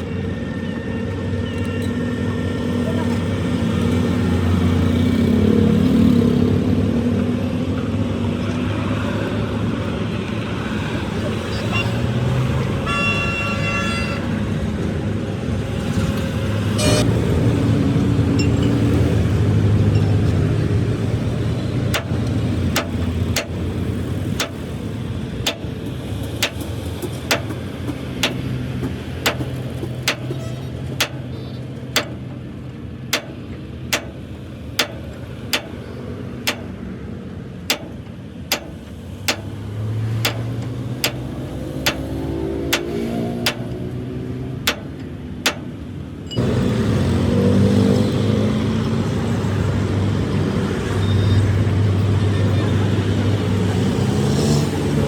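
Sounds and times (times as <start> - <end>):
sharp clicks: 28.2 - 28.5, 29.3 - 30.4, 32.0 - 32.3, 33.2 - 35.8, 36.5 - 36.8, 37.7 - 39.6, 40.3 - 42.1, 42.8 - 43.8, 44.7 - 45.8.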